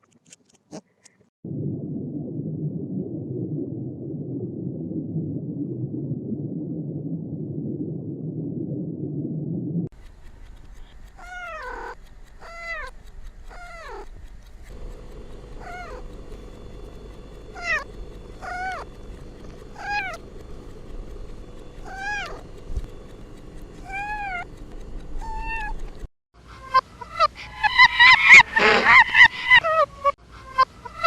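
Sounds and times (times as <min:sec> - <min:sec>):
cat meowing: 0:11.2 - 0:12.9, 0:13.5 - 0:14.1, 0:15.5 - 0:16.0, 0:17.5 - 0:18.9, 0:19.8 - 0:20.2, 0:21.8 - 0:22.4, 0:23.8 - 0:24.5, 0:25.2 - 0:25.8.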